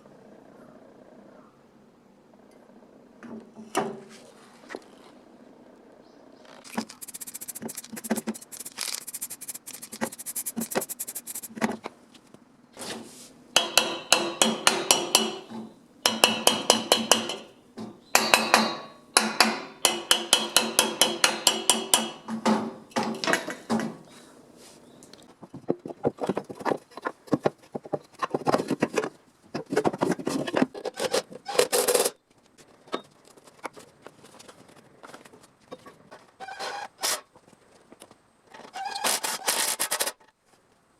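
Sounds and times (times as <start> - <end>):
hammer ringing on metal: 13.6 - 15.5, 16.1 - 17.4.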